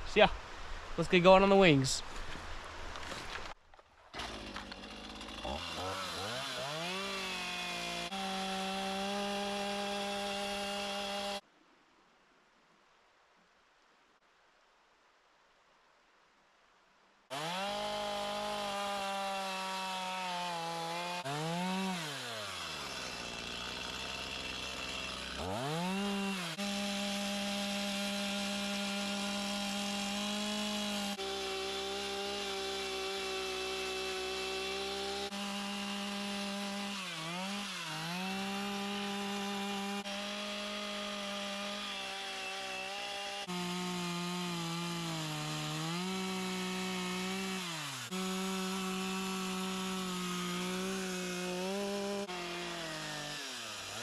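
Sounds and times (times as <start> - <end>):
chainsaw revving and idling: 4.2 - 11.4, 17.3 - 54.0.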